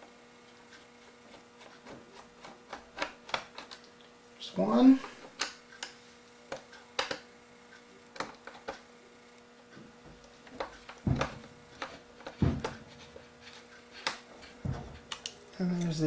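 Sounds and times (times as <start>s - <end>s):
faint mains hum: 0.0s - 16.0s
screwdriver clicks and taps: 5.4s - 7.2s
louder thuds: 11.0s - 13.0s, 14.6s - 15.1s.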